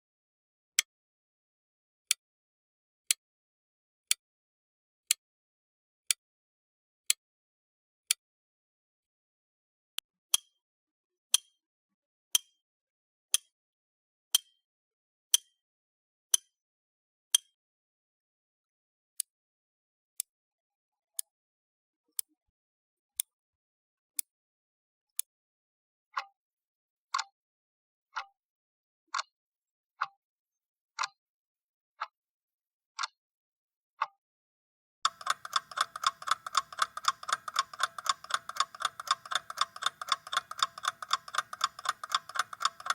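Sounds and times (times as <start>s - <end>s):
clock ticking: 35.0s - 42.9s
clock alarm ringing: 35.1s - 42.9s.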